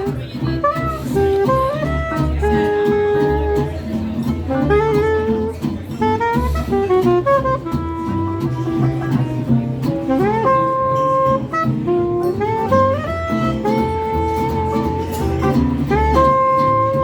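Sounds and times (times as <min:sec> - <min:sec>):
jazz saxophone melody: 0:00.0 - 0:17.0
walking bass accompaniment: 0:00.0 - 0:17.0.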